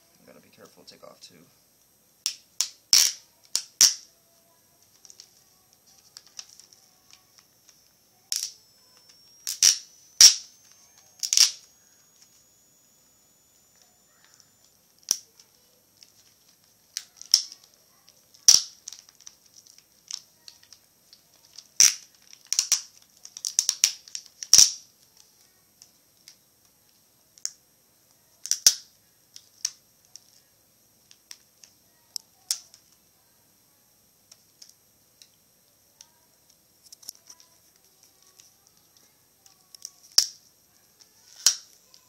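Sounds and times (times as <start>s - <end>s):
plastic parts and tools clicking: 4.8s - 12.4s.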